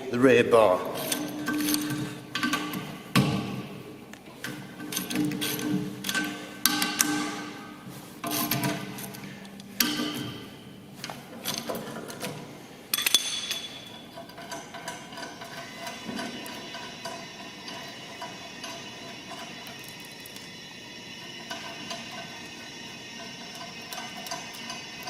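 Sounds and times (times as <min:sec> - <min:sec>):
metallic clank: 0:00.9 - 0:03.8, 0:04.4 - 0:19.7.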